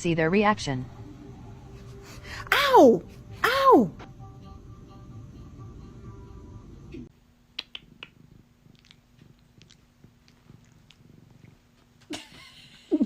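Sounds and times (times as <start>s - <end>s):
background music: 0.8s - 7.1s
cat purring: 7.8s - 13.0s.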